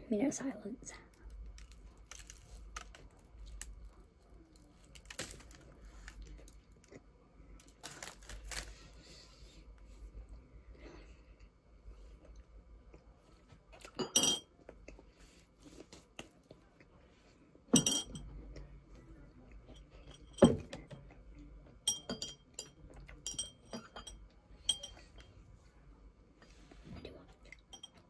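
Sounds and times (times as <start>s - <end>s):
tableware clinking: 13.9s - 14.5s, 17.8s - 18.3s, 19.7s - 20.9s, 21.9s - 25.3s, 27.7s - 28.0s.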